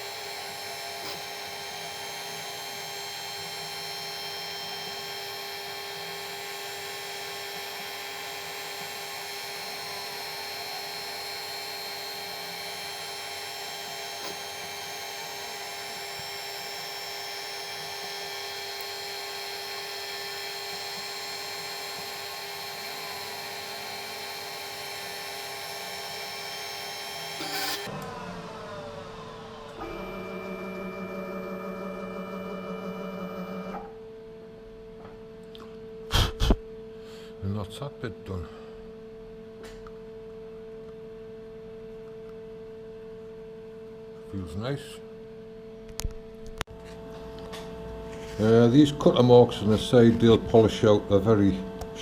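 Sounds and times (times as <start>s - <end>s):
milling machine running: 0.0s - 33.9s, 48.3s - 52.0s.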